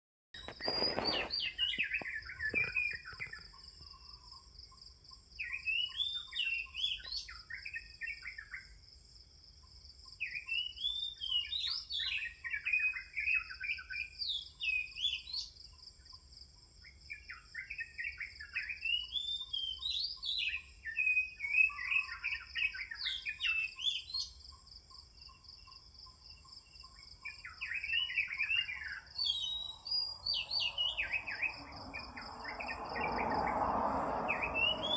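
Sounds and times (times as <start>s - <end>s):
bird singing whistled phrases: 0.4s - 3.4s, 5.4s - 8.6s, 10.2s - 15.5s, 17.1s - 24.4s, 27.3s - 33.5s, 34.2s - 34.9s.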